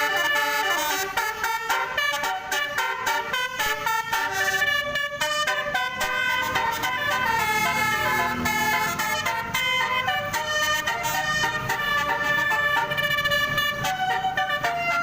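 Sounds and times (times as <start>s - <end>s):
multi-tone musical bus horn: 0.0s - 15.0s.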